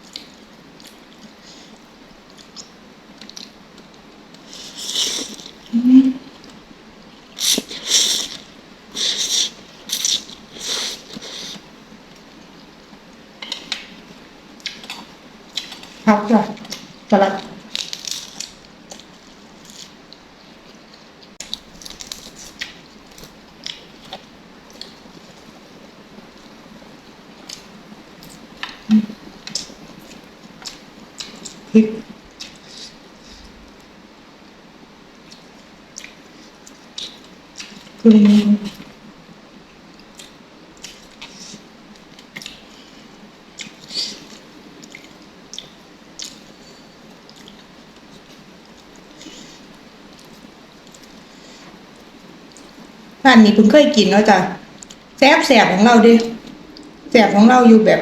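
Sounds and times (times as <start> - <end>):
person chewing: 2.3 - 6.6, 7.3 - 11.7, 17.6 - 20.2, 27.4 - 31.6, 43.6 - 52.8
wet chewing and smacking: 29.4 - 31.6, 40.0 - 42.9, 43.6 - 51.3.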